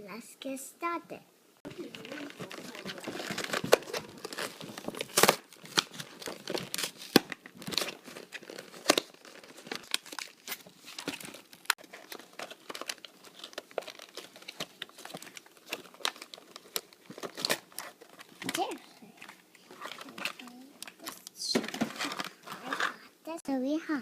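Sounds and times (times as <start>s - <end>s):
crinkling and crackles: 1.7s - 23.1s
packaging being torn open: 1.9s - 18.6s.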